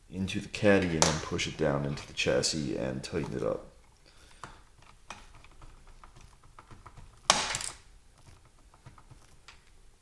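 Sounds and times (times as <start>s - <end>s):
small screws clicking and tapping: 3.2s - 9.8s.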